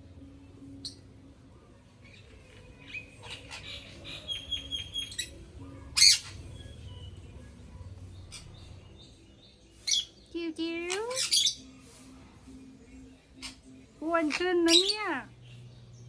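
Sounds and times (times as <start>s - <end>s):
parrot chirping and chattering: 2.0s - 7.0s, 8.0s - 9.0s, 9.7s - 12.1s, 13.3s - 15.3s
parrot squawk: 6.0s - 6.7s, 10.9s - 11.6s.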